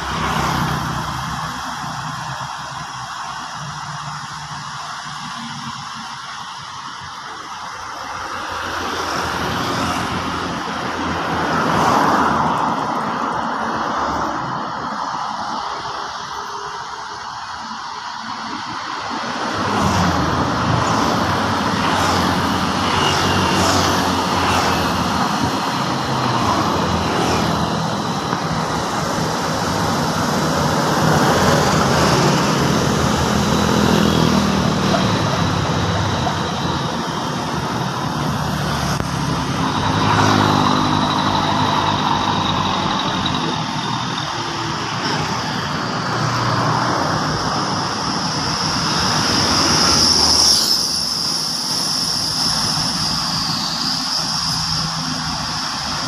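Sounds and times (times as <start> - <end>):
bulldozer diesel engine running: 15.7 - 56.0.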